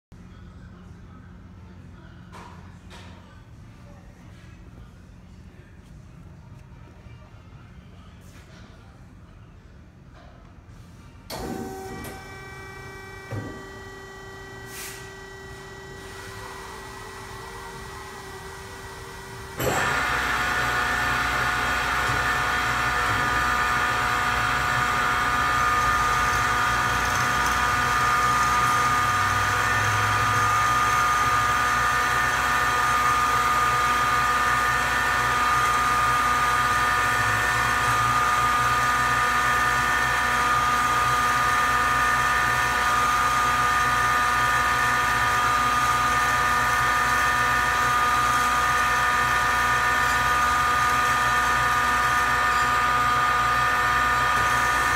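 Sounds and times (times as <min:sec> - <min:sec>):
band saw running: 0:11.4 - 0:54.9.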